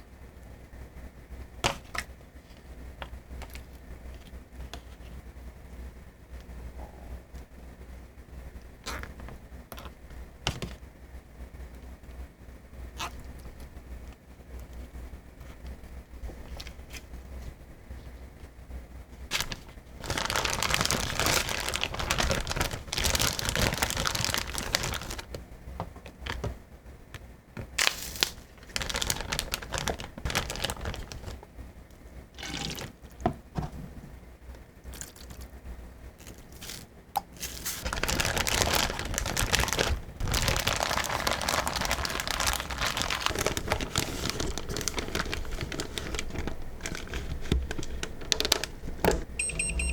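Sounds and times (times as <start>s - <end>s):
crinkling: 19.2s - 25.4s, 27.6s - 31.5s, 32.4s - 33.2s, 36.2s - 49.3s.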